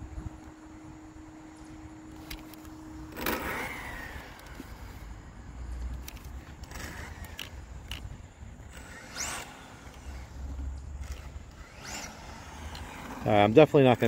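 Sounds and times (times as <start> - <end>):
electric motor whine: 0.0 - 14.0.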